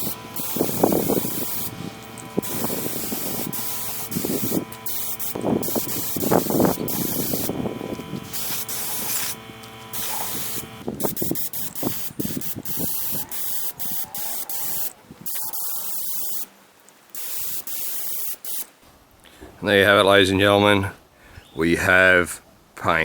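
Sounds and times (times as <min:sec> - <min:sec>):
aerosol spray can hissing: 0:00.0 - 0:07.6, 0:08.2 - 0:16.5, 0:17.1 - 0:18.7.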